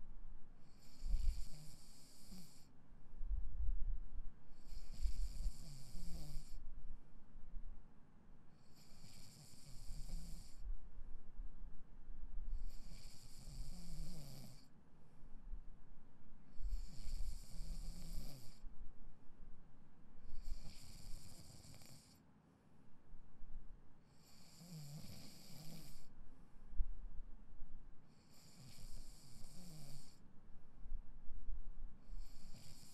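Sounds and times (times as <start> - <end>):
person snoring: 0.7 - 2.7, 4.6 - 6.6, 8.7 - 10.6, 12.7 - 14.7, 16.7 - 18.6, 20.4 - 22.2, 24.1 - 26.1, 28.3 - 30.2, 32.2 - 32.9.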